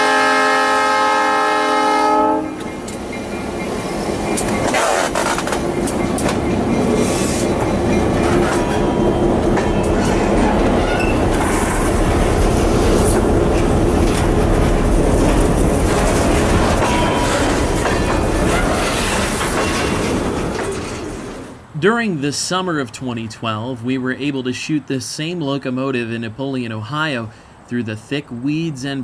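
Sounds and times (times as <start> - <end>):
freight train rumbling: 0.0 - 29.0
wheels clanking over rail joints: 2.5 - 21.7.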